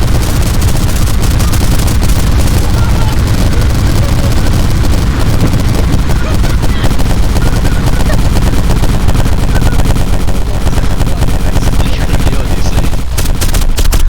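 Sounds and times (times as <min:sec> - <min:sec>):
loud distorted microphone noise: 0:00.0 - 0:14.0.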